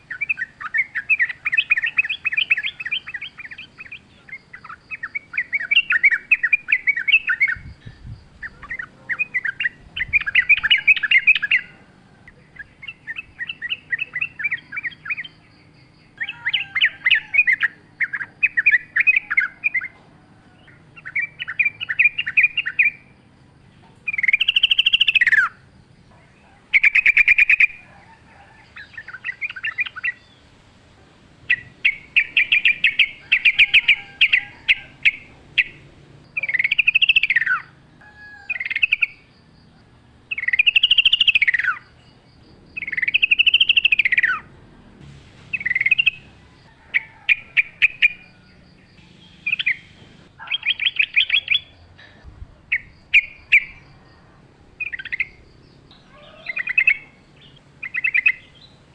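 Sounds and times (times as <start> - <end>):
bird singing bubbling phrases: 0.0 - 15.5, 16.1 - 20.0, 24.1 - 25.6, 31.4 - 37.7, 40.3 - 44.5, 45.1 - 58.9.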